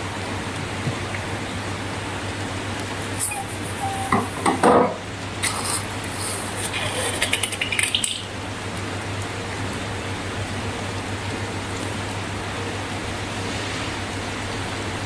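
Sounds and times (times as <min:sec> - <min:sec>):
steady hiss: 0:00.0 - 0:04.6, 0:05.4 - 0:08.2.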